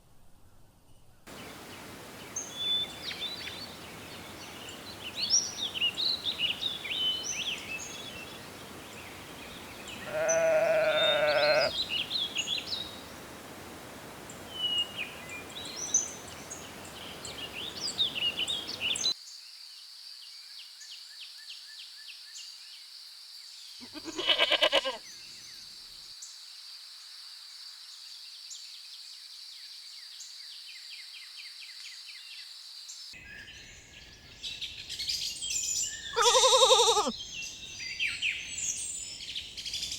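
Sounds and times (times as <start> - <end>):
birds chirping: 1.3 - 19.1, 33.2 - 39.9
lambs bleating: 10.0 - 11.8, 23.8 - 25.0, 36.1 - 37.1.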